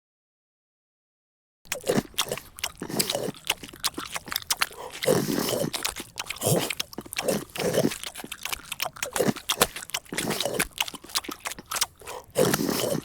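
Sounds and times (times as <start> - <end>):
loud crunching and chewing: 1.7 - 13.0.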